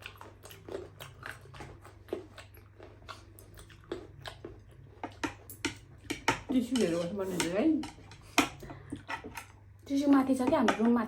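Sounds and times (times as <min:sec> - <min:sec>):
chewing and mouth smacks: 0:00.0 - 0:05.7.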